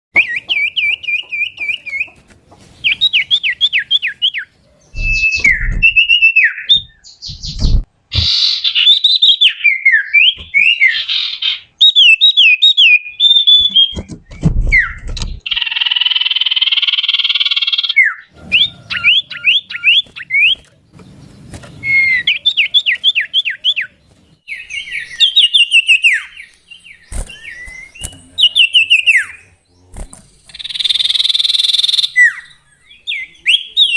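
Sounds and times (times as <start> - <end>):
bird whistling and trilling: 0.2 - 2.2, 2.8 - 20.7, 21.8 - 29.5, 30.5 - 33.9
dull low thumps: 4.9 - 7.9.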